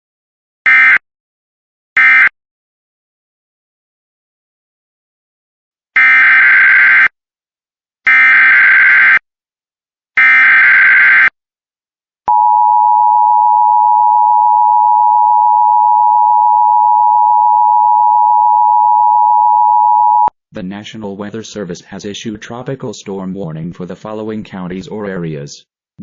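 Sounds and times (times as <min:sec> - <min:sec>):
steady high attention tone: 0:12.3 - 0:20.3.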